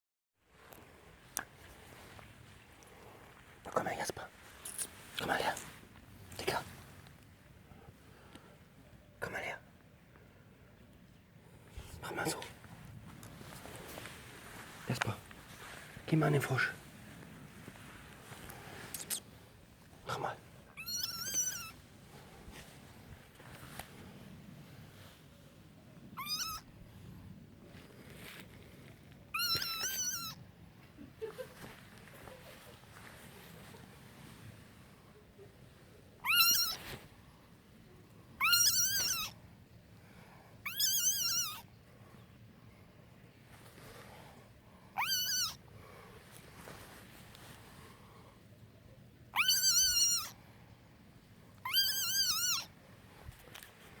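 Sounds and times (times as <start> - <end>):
frog squeaking: 20.8 - 21.8, 26.2 - 26.7, 29.3 - 30.4, 36.2 - 36.8, 38.4 - 39.4, 40.6 - 41.7, 45.0 - 45.6, 49.3 - 50.4, 51.6 - 52.7.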